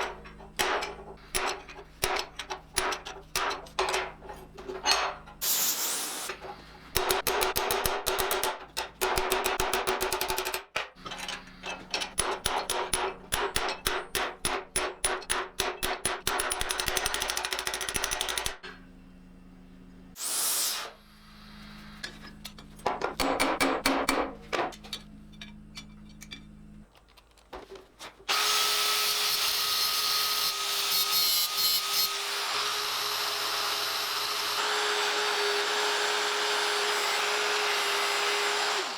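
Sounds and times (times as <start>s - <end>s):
power tool whining: 28.3s - 38.9s.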